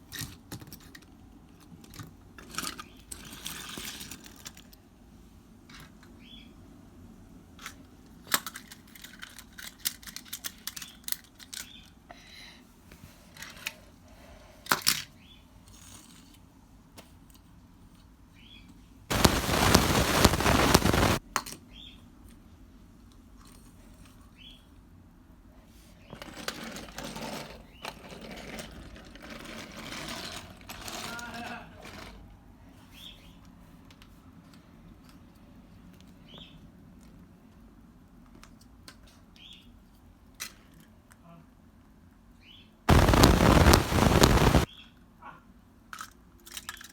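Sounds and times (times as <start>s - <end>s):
loud rushing noise: 19.1s - 21.2s, 42.9s - 44.7s.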